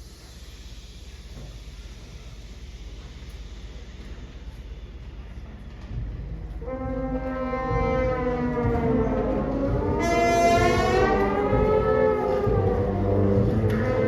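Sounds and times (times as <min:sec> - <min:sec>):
low rumble: 0:05.9 - 0:14.0
symphonic band brass and woodwinds: 0:06.6 - 0:14.0.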